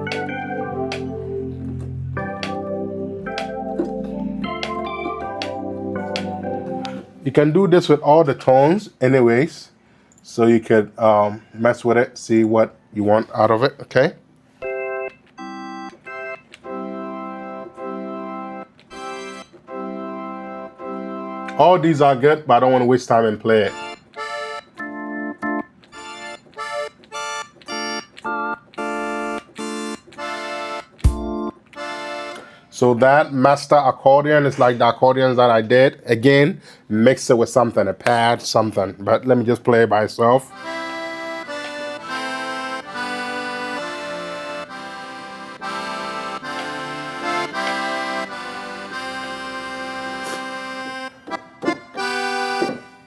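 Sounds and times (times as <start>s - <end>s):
synthesizer organ chords: 0.0s - 8.2s, 14.6s - 22.2s, 23.6s - 32.6s, 40.5s - 53.0s.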